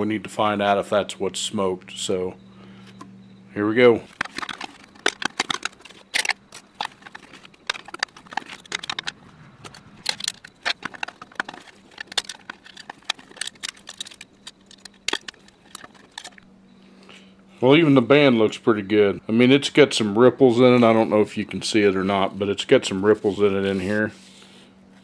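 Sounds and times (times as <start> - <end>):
metallic clicks and clinks of tools: 4.0 - 16.5.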